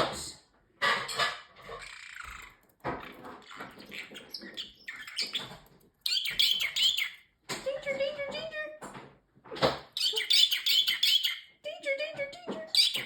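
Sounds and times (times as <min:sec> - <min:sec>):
parrotlet chattering: 0:01.2 - 0:07.3, 0:10.0 - 0:11.6, 0:12.6 - 0:13.0.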